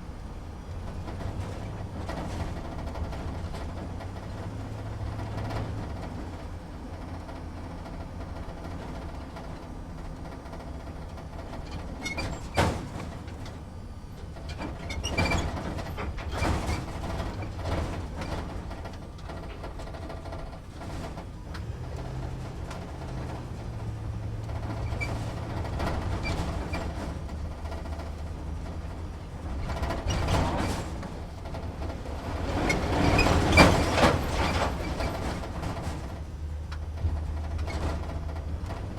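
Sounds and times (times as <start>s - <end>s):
truck engine droning: 0.0s - 38.9s
cab rattling and knocking: 10.4s - 38.9s.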